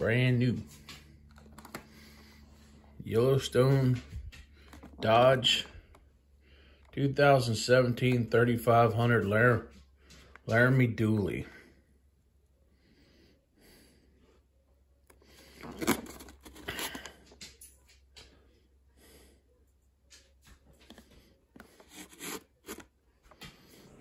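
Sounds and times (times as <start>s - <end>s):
packaging rustling: 4.5s - 6.0s, 15.4s - 17.3s, 21.6s - 23.0s.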